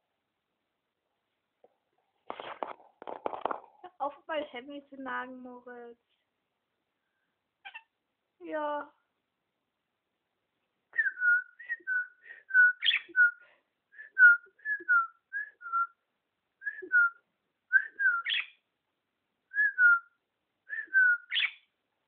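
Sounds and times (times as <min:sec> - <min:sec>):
parakeet whistling: 0:11.0 - 0:13.4, 0:17.8 - 0:18.6, 0:20.7 - 0:21.6.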